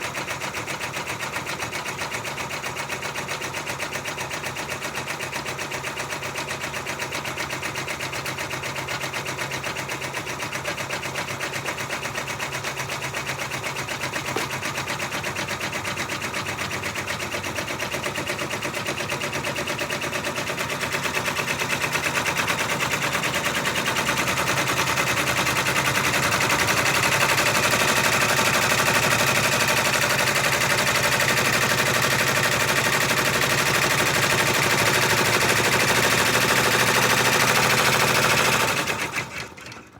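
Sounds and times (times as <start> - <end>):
embroidery machine stitching: 0.0 - 39.9.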